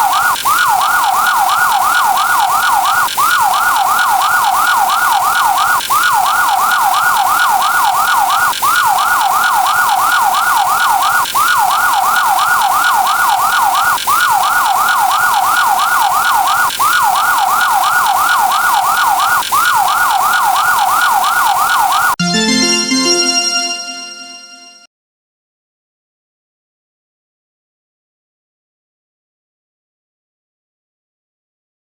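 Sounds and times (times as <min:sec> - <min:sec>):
police siren yelp: 0:00.0 - 0:23.3.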